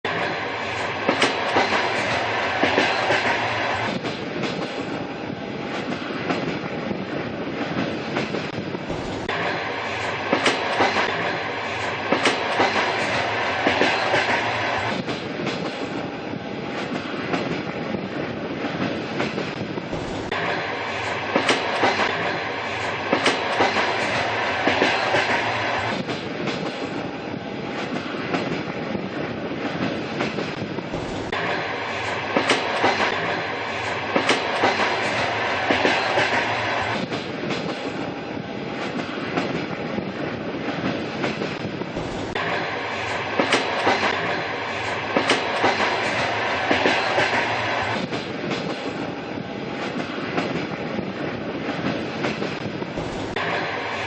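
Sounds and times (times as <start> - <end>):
train rumbling along track: 0.0 - 54.0
wheels clacking over rail joints: 0.1 - 5.0, 7.7 - 16.0, 18.7 - 27.0, 29.6 - 38.0, 40.6 - 50.8.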